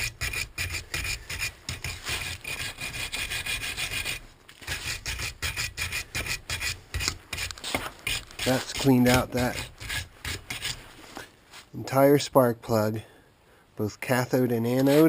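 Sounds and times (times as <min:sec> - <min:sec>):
wire brush scraping: 0:00.0 - 0:11.7.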